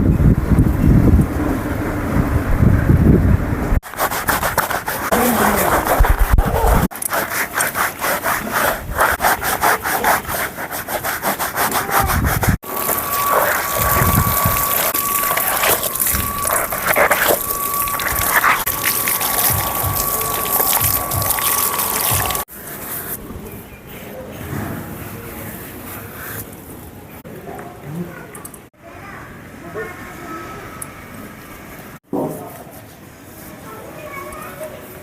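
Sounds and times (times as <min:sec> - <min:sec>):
grooming tool scraping horse: 0:03.8 - 0:22.5
faint steady high tone: 0:12.6 - 0:22.5.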